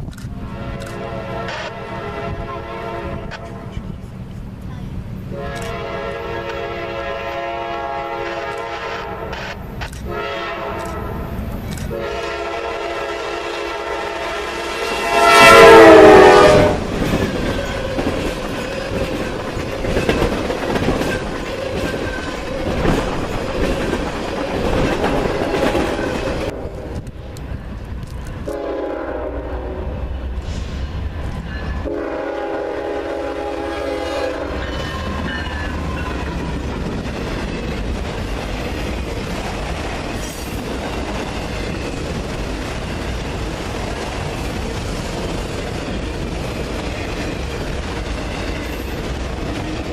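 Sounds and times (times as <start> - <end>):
train cars rumbling past: 0.0 - 49.9
locomotive air horn blasts: 0.3 - 3.8, 5.3 - 11.3, 11.9 - 16.9, 28.4 - 30.2, 31.8 - 35.2.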